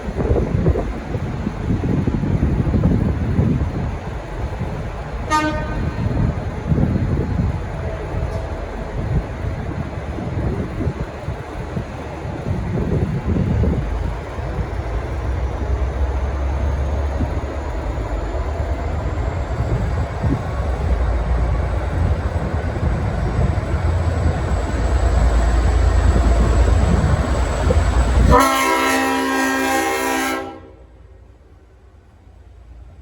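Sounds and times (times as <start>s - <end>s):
diesel locomotive rumble: 0.0s - 33.0s
train air horn chord: 5.3s - 6.0s, 28.3s - 31.0s.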